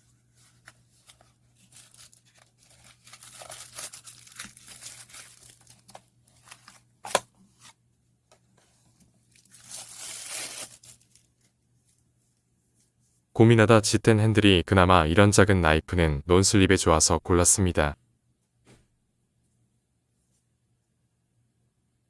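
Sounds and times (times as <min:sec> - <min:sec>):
packaging crinkling and tearing: 0:01.0 - 0:07.2, 0:09.3 - 0:11.4.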